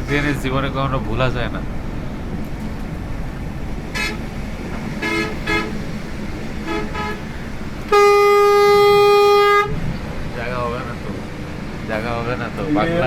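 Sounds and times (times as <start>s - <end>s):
bus engine rumble: 0.0s - 13.0s
road noise: 0.0s - 13.0s
vehicle horns honking: 3.9s - 4.3s, 4.9s - 6.0s, 6.6s - 9.9s.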